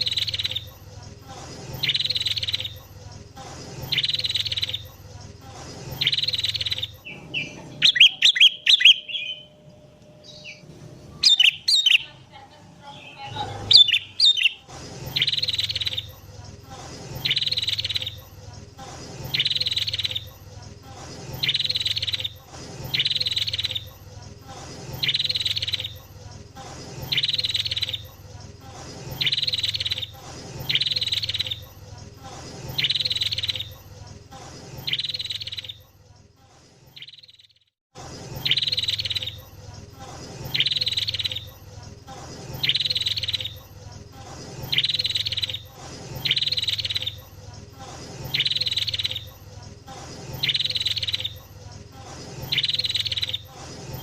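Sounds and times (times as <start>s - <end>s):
low steady hum: 0.0s - 36.4s
bulbul calling: 5.9s - 12.2s, 12.8s - 16.1s.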